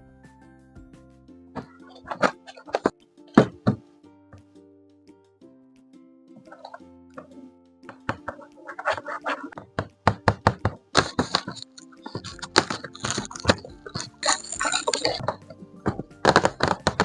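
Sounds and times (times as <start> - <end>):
soft background music: 0.0 - 17.0
packaging clicks and taps: 6.4 - 17.0.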